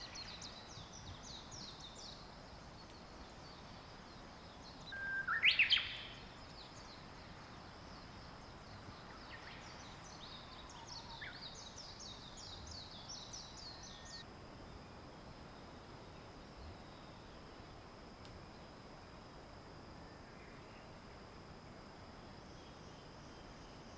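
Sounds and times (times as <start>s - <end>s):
birds singing: 0.0s - 14.2s
faint outdoor hiss: 0.0s - 23.9s.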